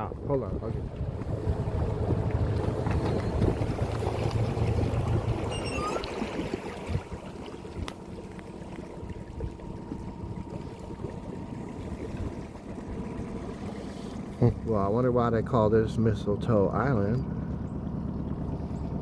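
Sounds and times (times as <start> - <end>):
boat motor humming: 0.0 - 19.0
water sloshing: 0.1 - 15.5
short chirps: 5.4 - 6.4.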